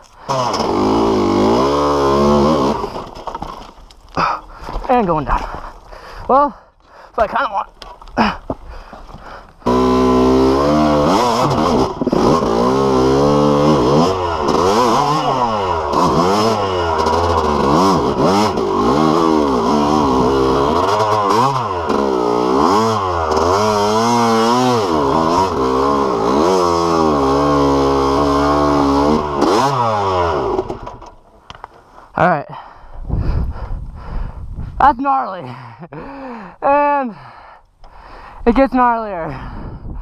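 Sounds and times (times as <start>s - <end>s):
dirt bike engine revving: 0.3s - 3.2s, 9.6s - 31.2s.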